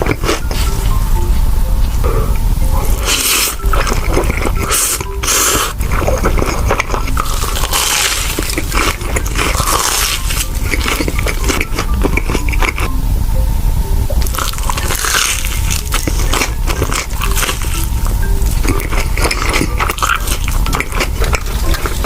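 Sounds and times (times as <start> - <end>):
crunching and chewing food: 0.0 - 13.0, 14.2 - 22.0.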